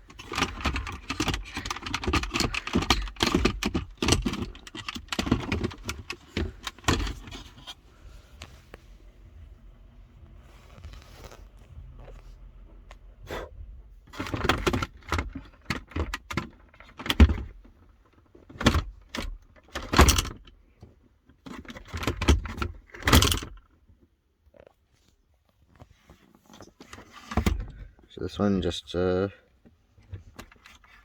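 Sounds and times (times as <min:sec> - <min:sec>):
plastic trim clicking and rattling: 0:00.0 - 0:07.7, 0:14.1 - 0:17.6, 0:18.2 - 0:20.5.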